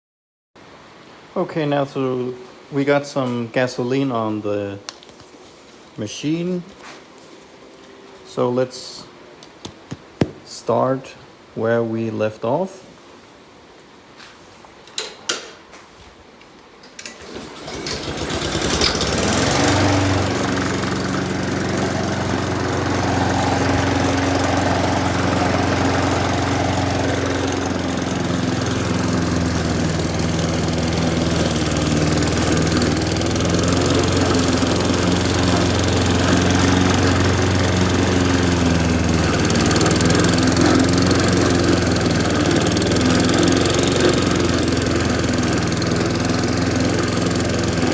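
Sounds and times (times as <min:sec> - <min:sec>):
lawn mower engine running: 0:17.1 - 0:47.9.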